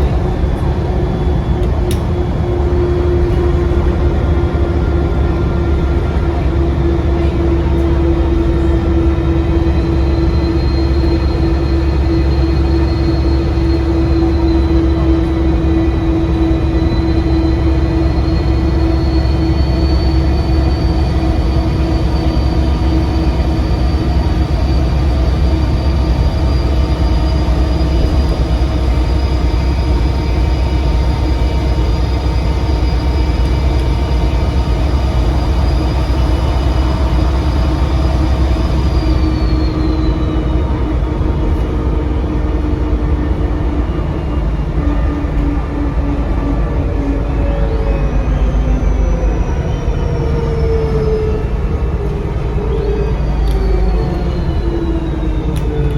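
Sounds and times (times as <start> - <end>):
bus engine drone: 0.0 - 55.9
high turbocharger whistle: 9.5 - 41.6, 47.8 - 55.9.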